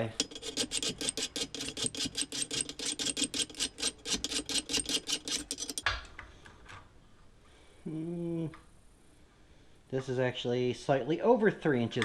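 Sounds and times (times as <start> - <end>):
file rasping on metal: 0.0 - 5.8.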